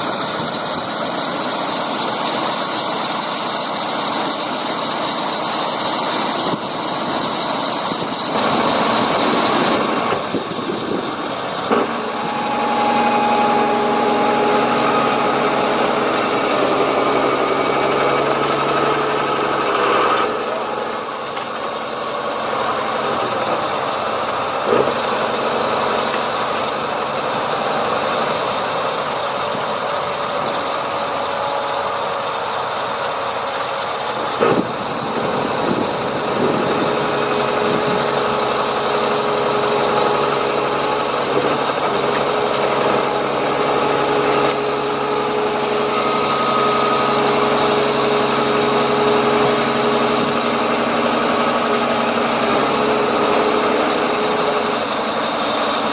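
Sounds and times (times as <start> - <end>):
diesel engines running: 0.0 - 55.9.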